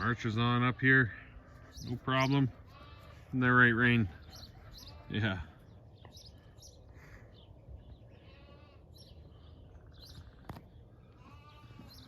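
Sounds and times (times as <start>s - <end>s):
young farm animals bleating: 0.0s - 5.8s, 7.8s - 9.6s, 10.9s - 12.0s
small birds chirping: 0.0s - 12.0s.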